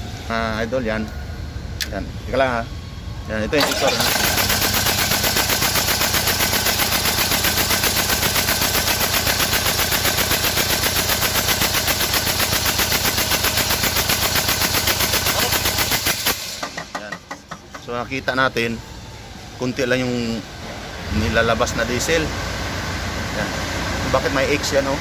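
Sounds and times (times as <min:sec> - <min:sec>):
diesel engine rapid pulsing: 0:03.6 - 0:17.0.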